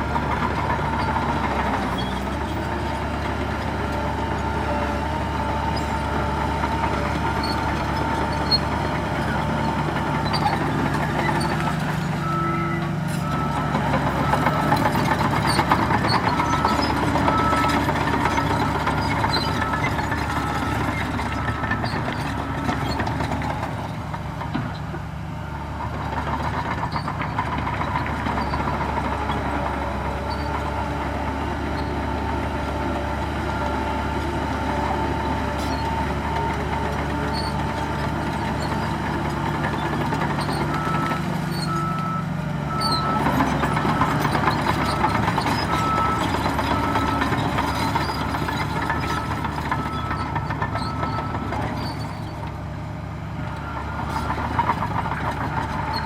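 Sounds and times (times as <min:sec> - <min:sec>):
heavy diesel engines running: 0:00.0 - 0:56.0
reversing alarm beeping: 0:40.7 - 0:51.7.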